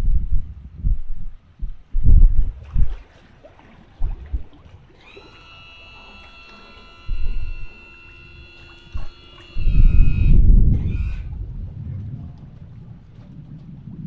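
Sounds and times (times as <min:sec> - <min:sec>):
wind buffeting microphone: 0:00.0 - 0:05.2, 0:07.0 - 0:14.0
steady high-pitched whine: 0:04.0 - 0:12.8.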